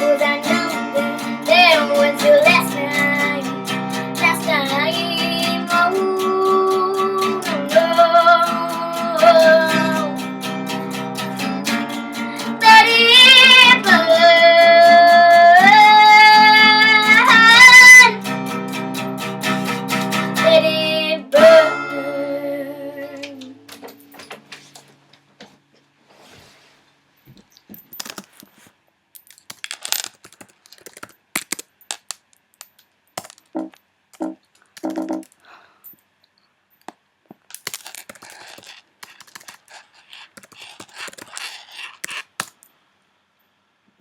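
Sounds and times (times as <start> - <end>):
handling noise clicks and rustling: 27.2 - 42.8.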